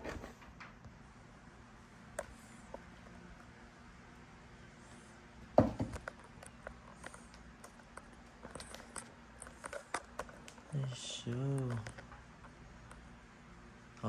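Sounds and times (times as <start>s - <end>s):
hard thump: 5.6s - 6.0s.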